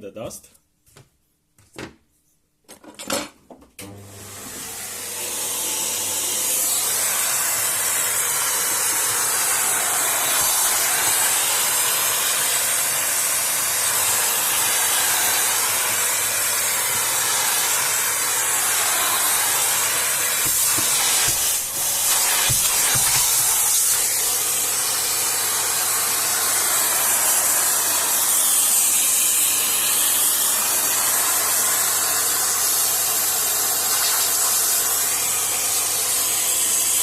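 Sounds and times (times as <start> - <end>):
compressed air hissing: 5.4 - 37.0.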